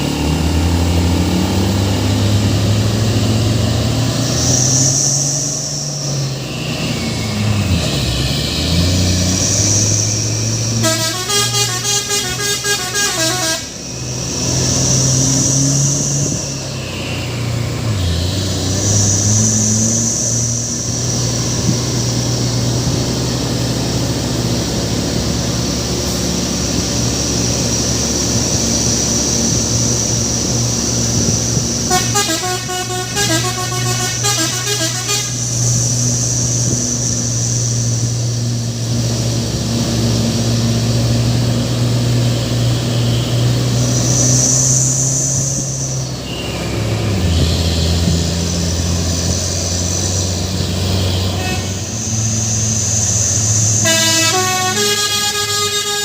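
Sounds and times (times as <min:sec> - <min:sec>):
truck engine running: 0:00.0 - 0:56.0
musical truck horn: 0:10.6 - 0:13.8, 0:31.8 - 0:35.8, 0:51.1 - 0:52.1, 0:53.6 - 0:56.0.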